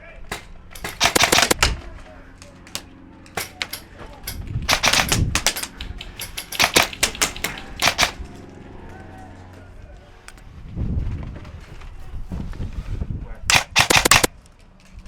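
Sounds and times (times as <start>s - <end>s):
airsoft guns firing: 0.3s - 1.9s, 2.7s - 8.4s, 13.5s - 14.3s.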